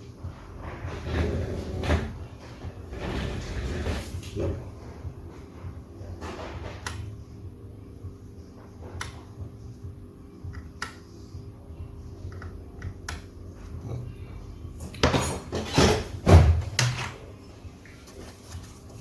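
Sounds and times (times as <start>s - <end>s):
tools clattering and rustling: 14.8s - 17.3s.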